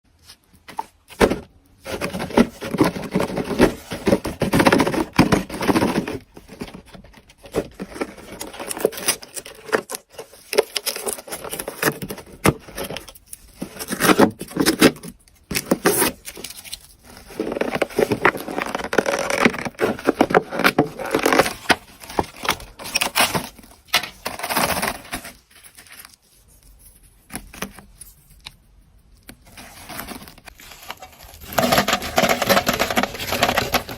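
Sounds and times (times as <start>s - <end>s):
meat grinder crunching and scraping: 31.3s - 33.9s.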